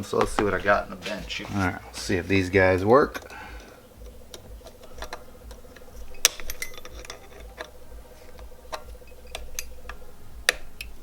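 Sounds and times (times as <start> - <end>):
pliers clicking on metal ring: 4.0 - 7.7, 8.4 - 10.9.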